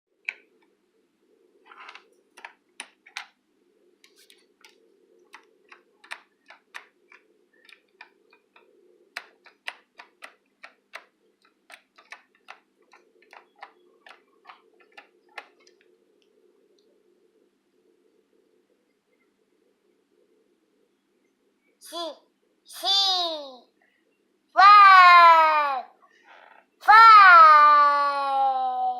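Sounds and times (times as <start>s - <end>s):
steady low hum: 3.4s - 22.7s
clicky keyboard keys pressed: 4.1s - 15.8s.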